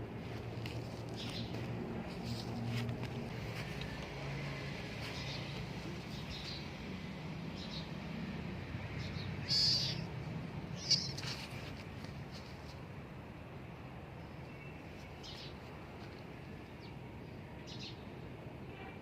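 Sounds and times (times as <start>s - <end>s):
birds chirping: 1.0s - 2.6s, 5.0s - 6.8s, 8.8s - 11.7s.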